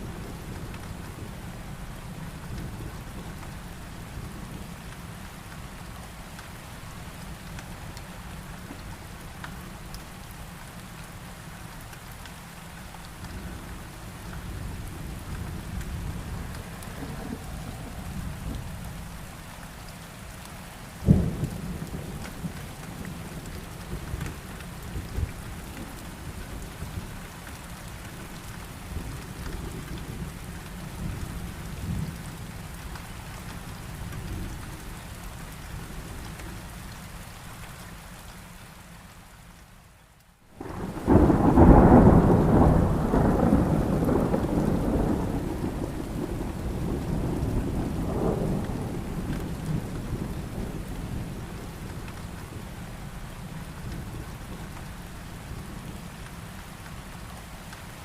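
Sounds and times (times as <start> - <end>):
heavy rain falling: 0.0 - 58.0
low rumble of thunder: 13.1 - 19.5, 21.0 - 36.6, 40.6 - 56.6
sharp thunderclap: 40.6 - 50.8.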